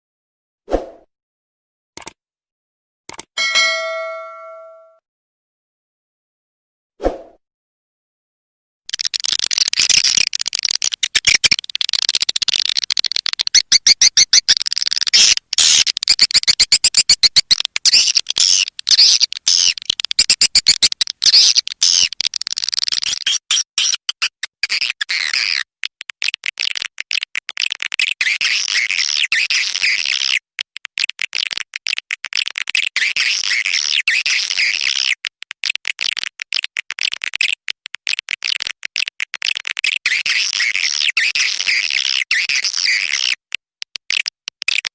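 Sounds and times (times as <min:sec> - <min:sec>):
swiftlet calls twittering: 0:08.9 - 0:22.4.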